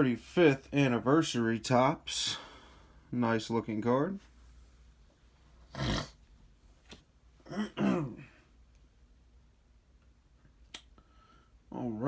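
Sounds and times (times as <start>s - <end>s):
man clearing his throat: 7.5s - 8.4s.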